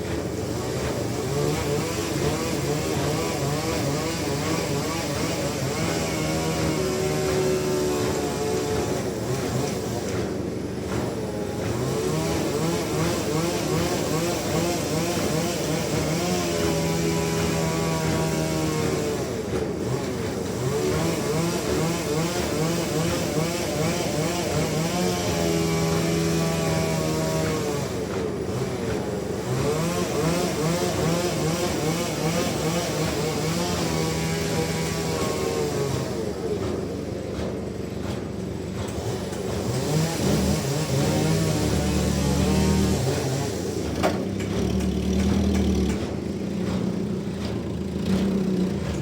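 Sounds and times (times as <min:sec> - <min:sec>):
sawmill saw machinery running: 0:00.0 - 0:49.0.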